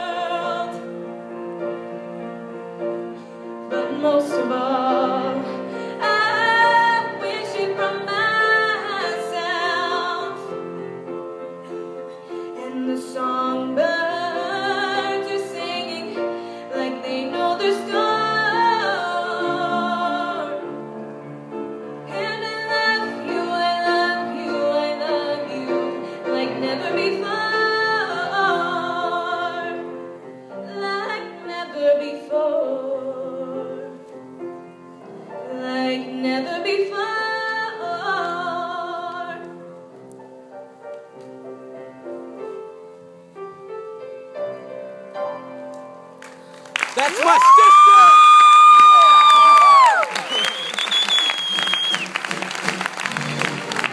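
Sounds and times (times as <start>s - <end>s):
woman singing: 0.0s - 0.9s, 3.7s - 10.6s, 12.6s - 20.8s, 22.1s - 30.0s, 30.6s - 34.0s, 35.4s - 39.6s
piano accompaniment: 0.0s - 53.9s.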